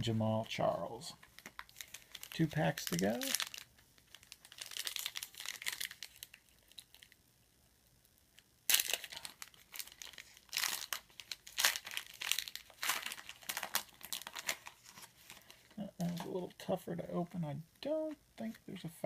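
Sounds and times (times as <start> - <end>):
foil wrapper crinkling: 1.2 - 7.2, 8.3 - 16.5
foil tearing: 1.6 - 7.0, 8.7 - 15.6.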